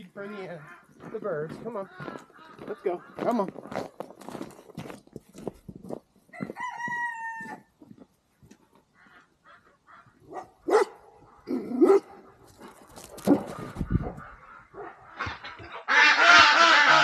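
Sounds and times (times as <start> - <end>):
poultry calling: 0.0 - 3.9, 8.9 - 10.4, 13.4 - 17.0.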